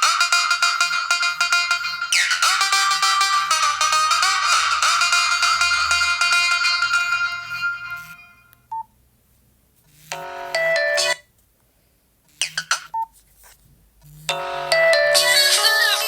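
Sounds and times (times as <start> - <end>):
phone ringtone tunes: 0.0 - 8.5, 10.1 - 11.3, 14.3 - 16.0.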